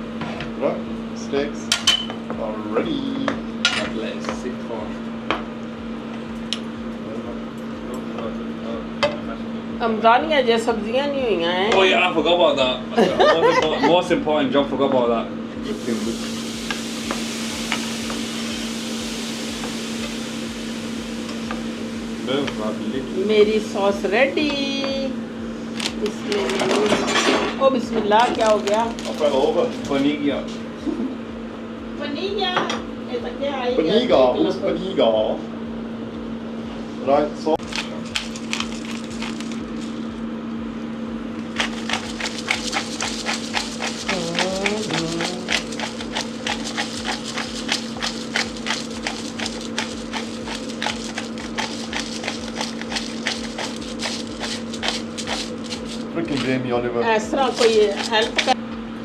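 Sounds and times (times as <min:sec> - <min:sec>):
steady hum: 0:15.3 - 0:26.4, 0:35.4 - 0:59.0
food sizzling in a frying pan: 0:15.6 - 0:24.7, 0:41.6 - 0:56.1, 0:57.3 - 0:58.6
low hum: 0:15.6 - 0:25.8
utensil tapping: 0:41.5 - 0:56.1, 0:57.4 - 0:58.6.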